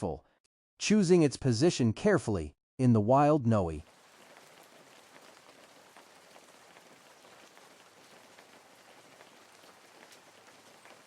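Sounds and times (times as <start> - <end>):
faint hiss with light crackling: 3.8 - 11.0.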